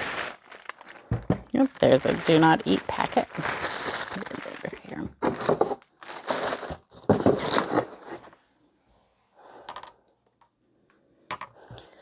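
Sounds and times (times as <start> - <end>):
packaging crinkling and rustling: 0.0 - 8.3.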